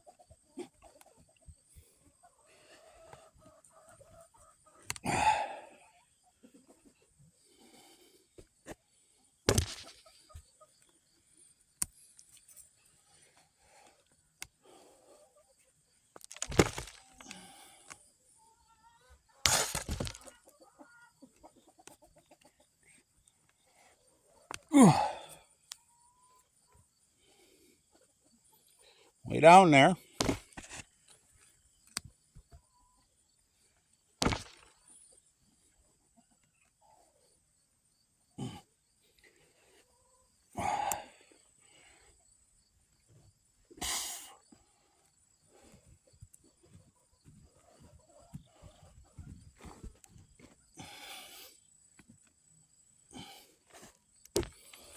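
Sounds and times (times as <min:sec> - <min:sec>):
tool striking soil: 0:09.5 - 0:10.0, 0:16.2 - 0:17.5, 0:19.5 - 0:20.4, 0:30.2 - 0:30.8, 0:34.2 - 0:34.8
rustling of soil and vines: 0:09.5 - 0:10.4, 0:15.8 - 0:18.0, 0:19.2 - 0:20.7, 0:34.2 - 0:34.9
scraping and thudding in dirt: 0:09.5 - 0:10.6, 0:16.1 - 0:18.1, 0:19.2 - 0:20.7, 0:30.0 - 0:32.6, 0:34.2 - 0:35.2, 0:46.6 - 0:50.9, 0:53.2 - 0:54.9.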